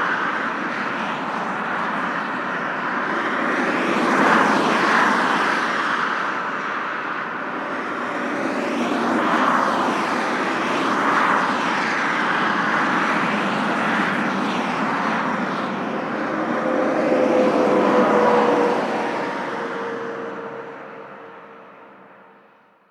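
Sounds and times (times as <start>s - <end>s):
highway traffic: 0.0s - 22.9s
vehicle hum: 14.7s - 22.6s.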